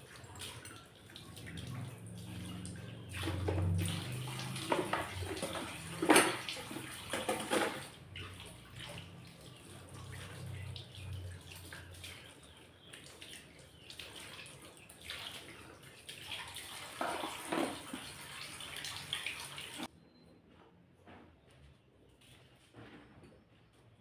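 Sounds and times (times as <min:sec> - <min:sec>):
water running from a tap: 0:00.0 - 0:19.9
items clattering: 0:04.6 - 0:07.9.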